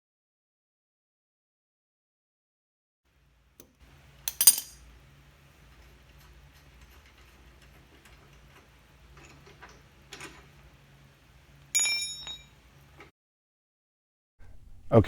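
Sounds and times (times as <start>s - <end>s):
hand tools clicking and tapping: 3.6s - 4.9s
ringing metal clink: 4.2s - 4.8s, 11.7s - 12.7s.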